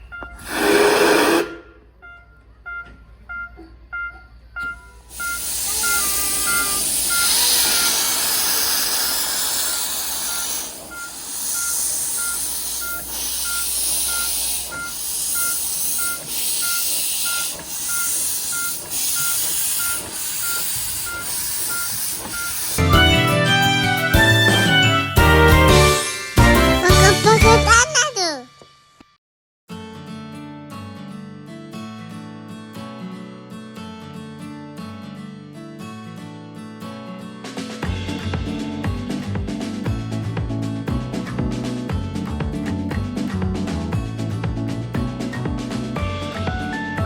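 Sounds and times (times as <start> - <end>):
level crossing alarm beeping: 0.0 - 23.7
steam locomotive hissing: 0.4 - 1.8, 5.0 - 28.3
loud burst of noise: 0.4 - 1.9, 5.0 - 22.8.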